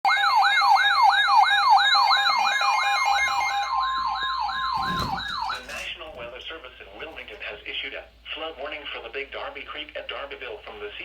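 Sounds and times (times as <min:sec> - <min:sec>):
emergency alert siren tone: 0:00.1 - 0:04.8.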